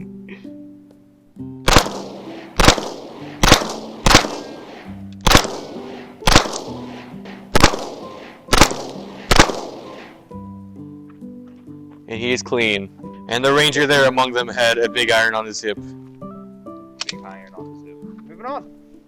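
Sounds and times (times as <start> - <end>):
background music: 0.0 - 19.0
pistol shots echoing: 1.7 - 10.3.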